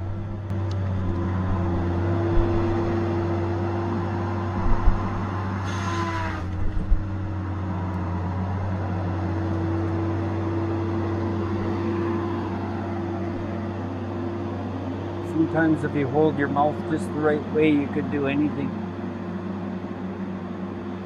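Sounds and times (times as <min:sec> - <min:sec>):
dull low thumps: 0:00.0 - 0:03.0, 0:04.5 - 0:05.3
heavy machine engine drone: 0:00.0 - 0:21.0.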